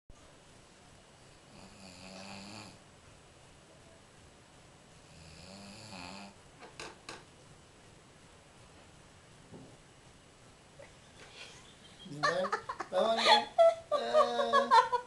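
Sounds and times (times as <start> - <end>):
person snoring: 1.5 - 2.8, 5.1 - 6.4.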